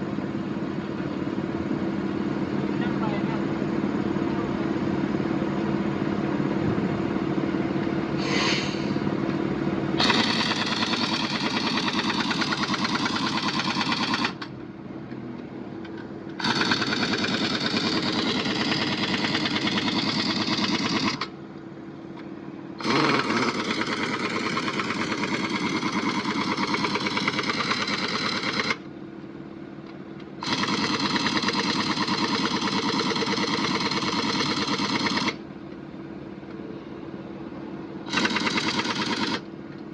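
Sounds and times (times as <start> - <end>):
steady low hum: 0.0 - 39.9
pneumatic impact wrench running: 10.0 - 14.5, 16.4 - 21.3, 22.8 - 28.9, 30.4 - 35.4, 38.0 - 39.5.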